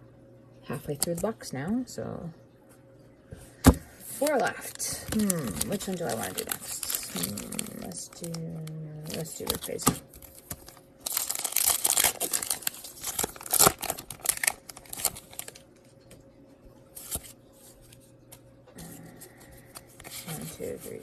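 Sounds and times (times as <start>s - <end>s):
cards rustling: 4.1s - 15.7s, 17.0s - 18.0s
foil wrapper tearing and crinkling: 4.2s - 15.6s.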